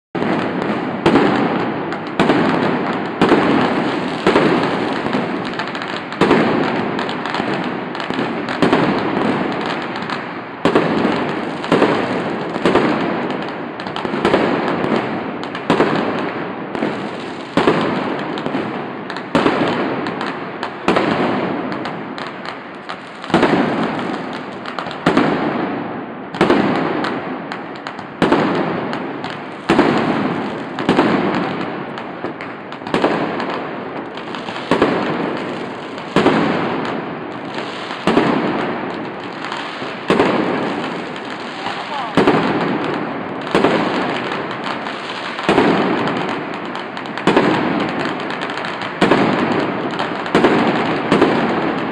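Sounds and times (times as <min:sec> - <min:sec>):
fireworks banging: 0:00.1 - 0:51.9.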